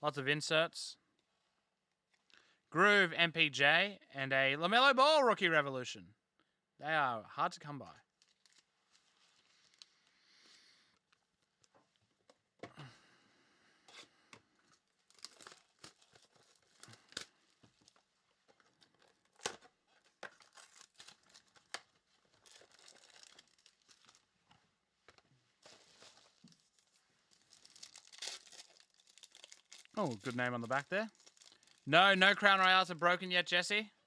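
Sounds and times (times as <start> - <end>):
wrappers crinkling and tearing: 8.1 - 10.1, 14.6 - 24.4, 25.6 - 31.9.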